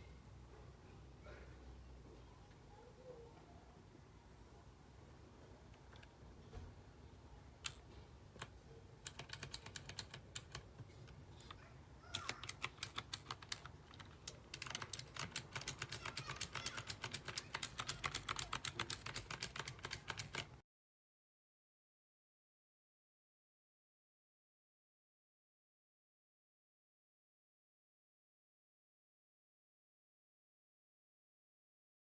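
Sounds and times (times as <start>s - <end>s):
keypad keys clicking: 8.4s - 20.6s.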